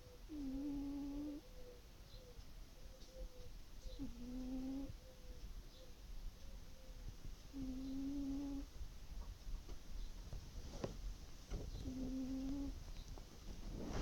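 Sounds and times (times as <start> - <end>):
soft humming snores: 0.0 - 1.5, 3.9 - 5.0, 7.5 - 8.7, 11.8 - 12.8.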